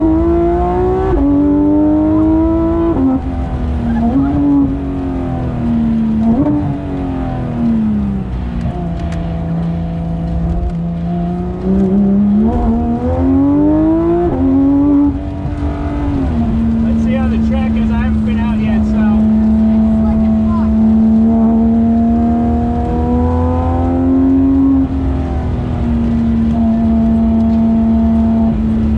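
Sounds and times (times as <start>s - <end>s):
sports car engine revving: 0.0s - 28.9s.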